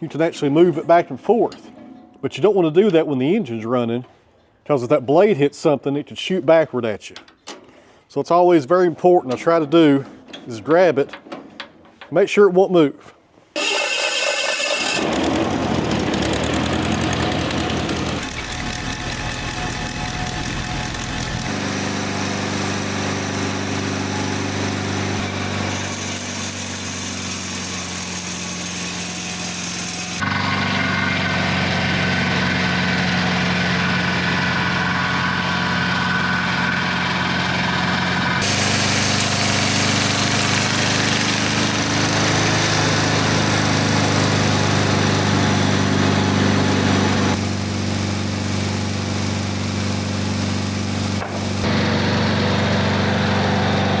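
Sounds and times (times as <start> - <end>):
circular saw blades turning: 13.6 - 30.3, 38.4 - 51.7
sawmill engine running: 13.6 - 54.0.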